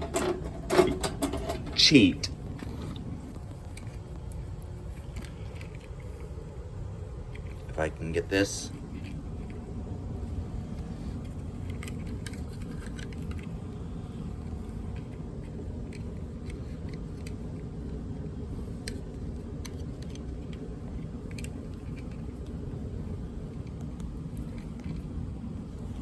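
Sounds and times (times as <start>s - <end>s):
clicks and rattles of small parts: 0.0s - 6.5s, 10.5s - 18.1s, 18.7s - 25.1s
steady low rumble: 0.0s - 26.0s.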